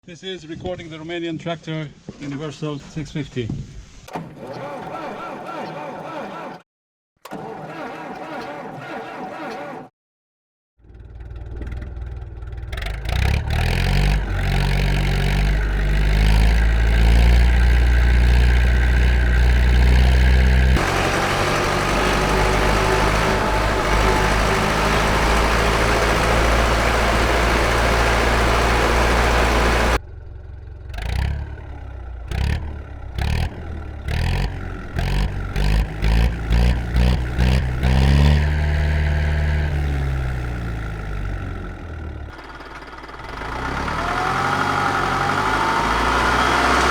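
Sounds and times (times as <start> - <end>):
tractor diesel engine revving: 7.2 - 9.9, 11.4 - 30.0, 30.9 - 46.9.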